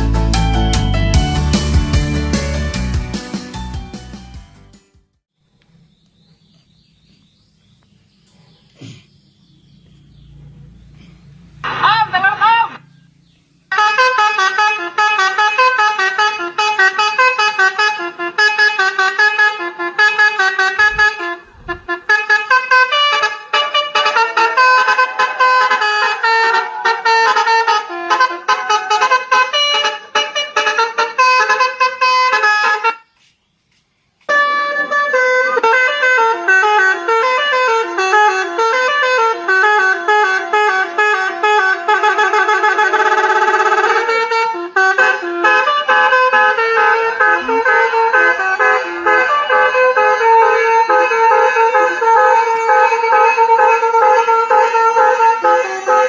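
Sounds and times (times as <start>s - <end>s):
bus horn playing tune: 0.0s - 4.5s, 13.7s - 33.1s, 34.2s - 56.0s.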